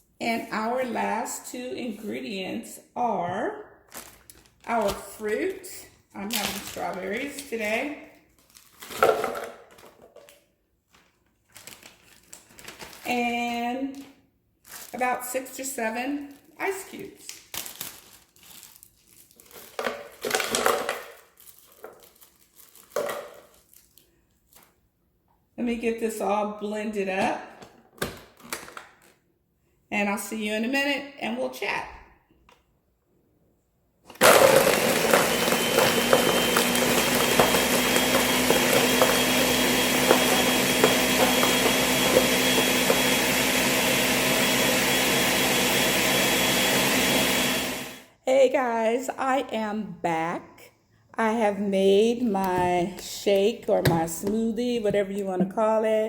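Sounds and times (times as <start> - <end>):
blender motor whining: 34.1 - 48.1.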